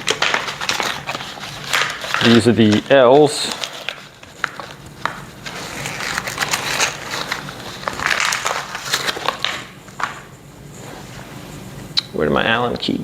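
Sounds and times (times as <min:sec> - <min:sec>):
plastic packaging rustling: 0:00.0 - 0:10.4.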